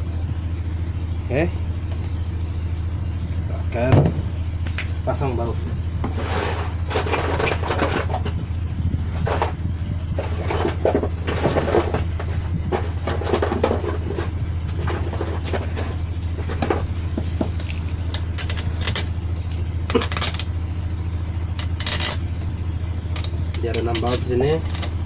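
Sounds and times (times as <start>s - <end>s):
steady low hum: 0.0s - 25.0s
metal clinks and taps: 12.7s - 22.2s.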